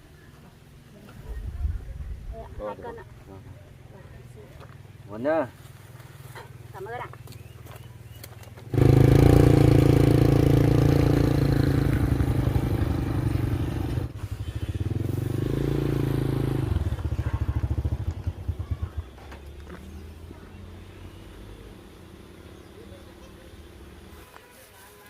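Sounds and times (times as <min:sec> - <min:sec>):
motorbike engine starting and revving: 0:08.6 - 0:24.4.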